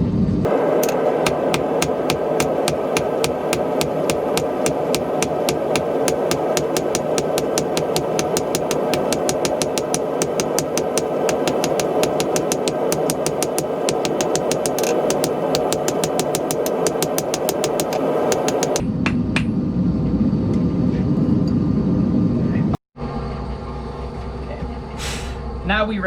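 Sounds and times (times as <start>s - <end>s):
hammer striking iron on anvil: 0.8s - 18.8s.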